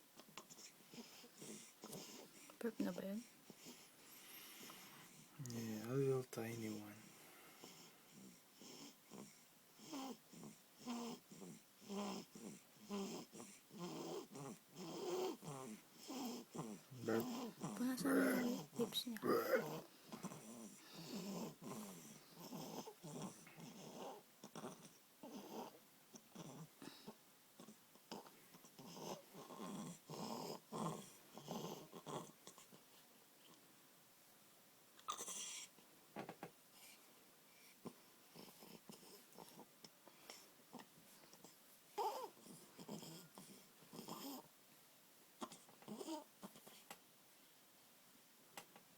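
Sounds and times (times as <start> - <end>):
baby snoring: 0.4 - 2.6, 6.7 - 32.8, 35.1 - 35.7, 38.3 - 39.7, 41.4 - 44.5, 45.4 - 46.8.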